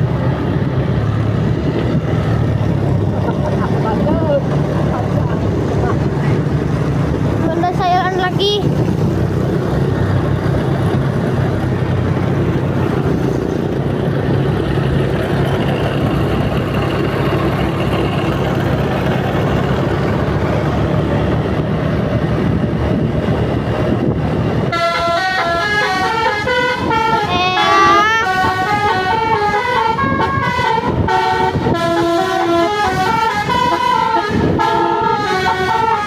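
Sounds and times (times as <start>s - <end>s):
bus engine running: 0.0s - 36.0s
multi-tone bus horn tune: 24.6s - 36.0s.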